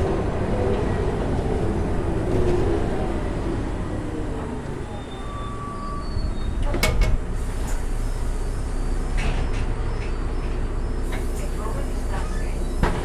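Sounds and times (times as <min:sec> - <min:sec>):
bus engine and road rumble: 0:00.0 - 0:13.0
bus fittings rattling: 0:06.5 - 0:07.9.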